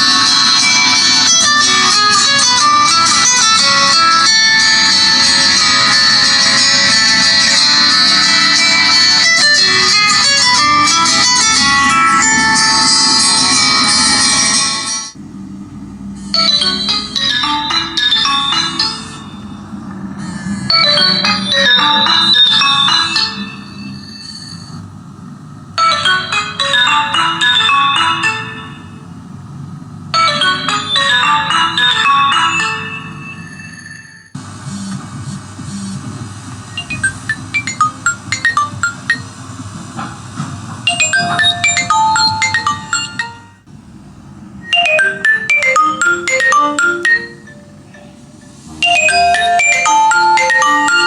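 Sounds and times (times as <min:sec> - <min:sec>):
phone ringtone melody: 0:00.1 - 0:15.1, 0:16.4 - 0:19.7, 0:20.7 - 0:24.1, 0:25.8 - 0:29.0, 0:30.2 - 0:34.4, 0:36.8 - 0:39.3, 0:40.9 - 0:43.7, 0:44.6 - 0:51.0.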